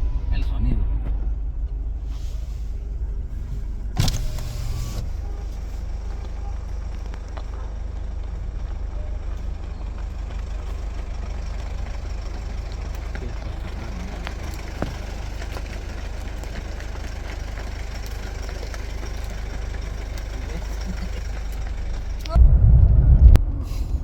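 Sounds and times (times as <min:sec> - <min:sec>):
car engine rumble and road noise: 0:00.0 - 0:24.0.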